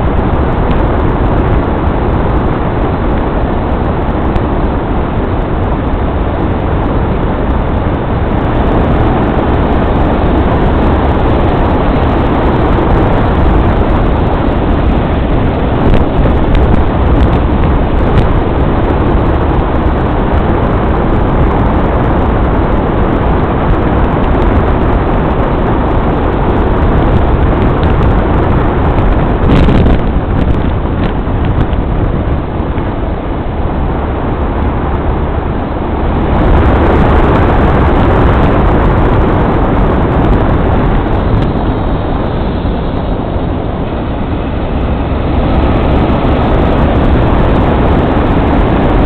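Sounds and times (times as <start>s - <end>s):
vehicle road and engine noise: 0.0s - 49.0s.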